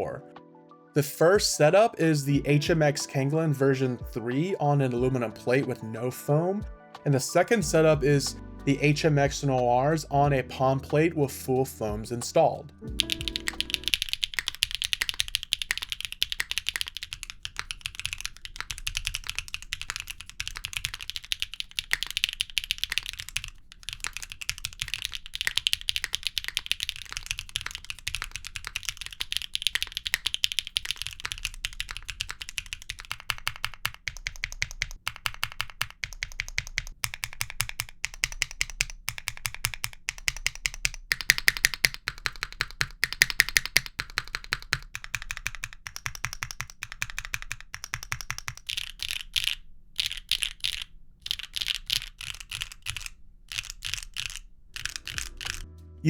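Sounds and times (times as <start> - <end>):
typing on mechanical keyboard: 12.9 - 55.7.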